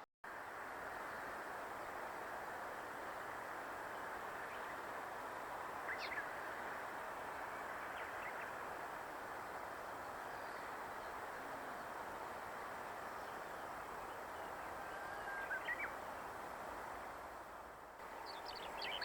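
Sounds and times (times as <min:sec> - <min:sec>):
outdoor background hiss: 0:00.3 - 0:19.0
bird chirps: 0:18.2 - 0:19.0.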